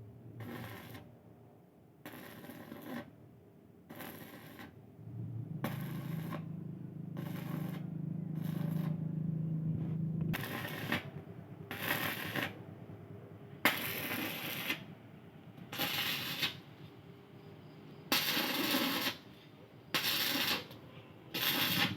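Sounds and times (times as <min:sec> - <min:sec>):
fireworks crackling and fizzing: 0:10.3 - 0:11.1, 0:11.7 - 0:12.6, 0:13.7 - 0:14.8, 0:15.7 - 0:16.6, 0:18.1 - 0:19.2, 0:20.0 - 0:20.7, 0:21.4 - 0:21.9.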